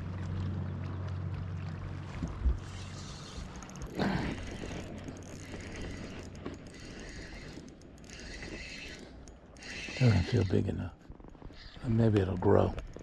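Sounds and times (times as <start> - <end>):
fishing reel clicking: 2.7 - 13.0.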